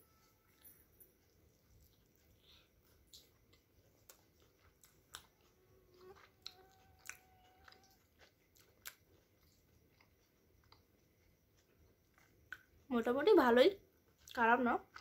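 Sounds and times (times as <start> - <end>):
faint held tone: 0.0 - 1.7
wet chewing: 1.8 - 12.8, 14.1 - 15.0.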